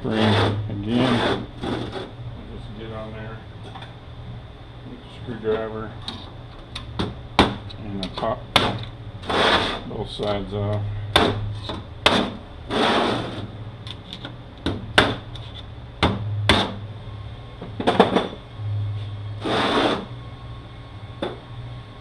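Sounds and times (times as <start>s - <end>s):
metal scraping: 0.0s - 2.2s, 9.2s - 9.9s, 19.0s - 20.1s.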